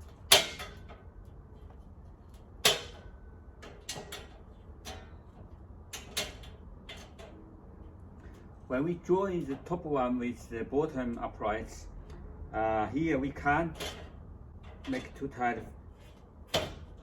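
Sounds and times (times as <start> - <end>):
steel shelving knocking and clanking: 0.0 - 1.1, 2.6 - 7.4, 16.4 - 17.0.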